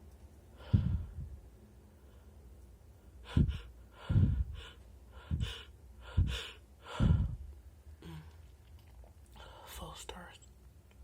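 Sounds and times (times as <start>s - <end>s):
person gasping breaths: 0.6s - 1.4s, 3.1s - 8.5s.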